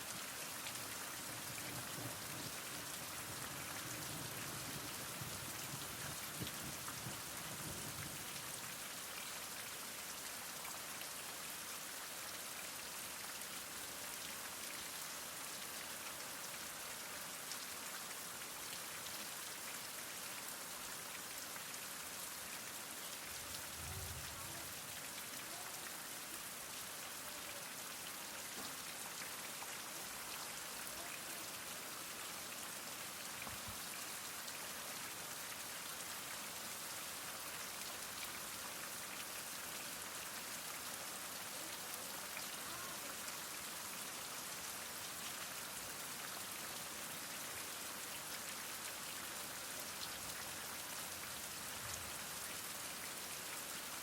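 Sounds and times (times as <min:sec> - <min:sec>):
heavy rain falling: 0:00.4 - 0:08.7, 0:23.2 - 0:27.6.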